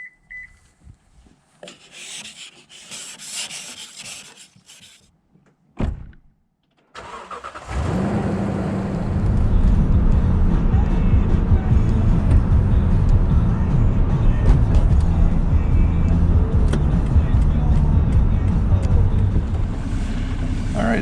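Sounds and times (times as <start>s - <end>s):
thump: 5.8s - 6.2s, 14.4s - 15.0s.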